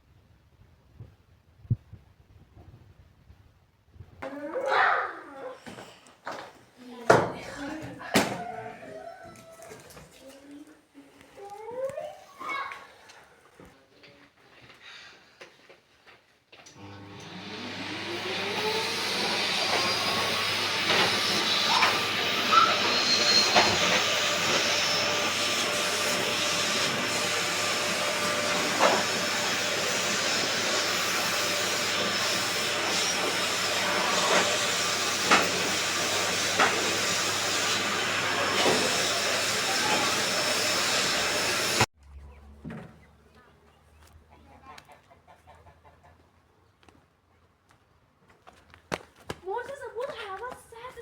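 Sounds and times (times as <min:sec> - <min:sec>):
vacuum cleaner running: 0:16.7 - 0:41.9.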